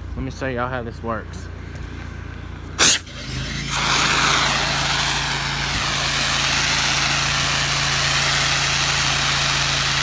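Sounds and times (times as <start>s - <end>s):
small engine droning: 1.5s - 10.0s
sprayer hissing: 2.8s - 10.0s.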